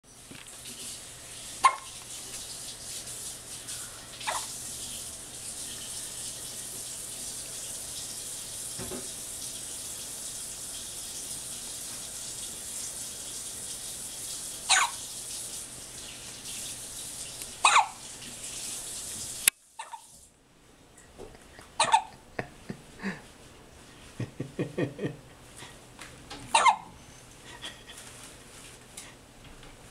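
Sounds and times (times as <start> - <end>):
steady hissing noise: 0.1 - 26.2
baby hiccuping: 1.6 - 1.9, 14.7 - 15.0, 17.6 - 18.0, 21.8 - 22.1, 26.6 - 26.9.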